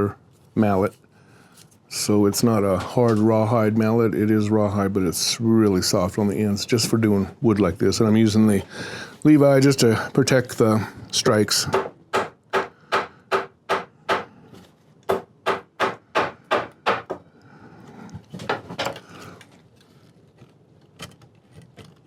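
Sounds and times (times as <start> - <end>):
rawhide mallet striking wood: 11.7 - 14.3, 15.1 - 17.2.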